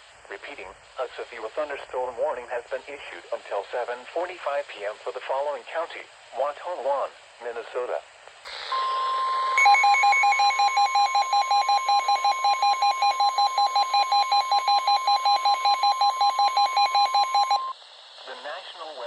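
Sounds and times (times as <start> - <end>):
rapid alarm beeping: 8.7 - 17.7.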